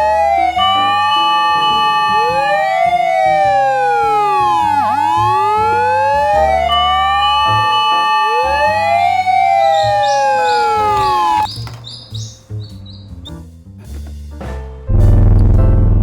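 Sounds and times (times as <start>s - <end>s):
fire engine siren wailing: 0.0s - 11.5s
music with stepping bass line: 0.0s - 16.0s.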